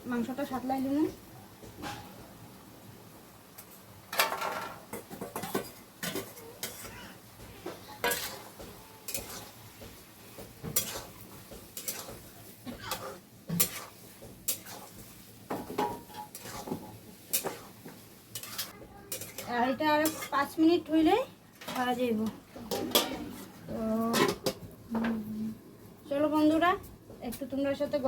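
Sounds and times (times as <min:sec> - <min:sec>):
utensil scraping a pan: 0:04.4 - 0:20.6, 0:22.6 - 0:24.5.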